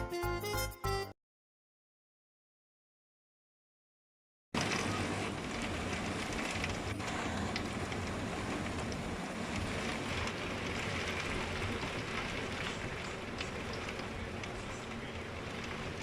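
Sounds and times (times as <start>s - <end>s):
steady rain falling: 4.6s - 16.0s.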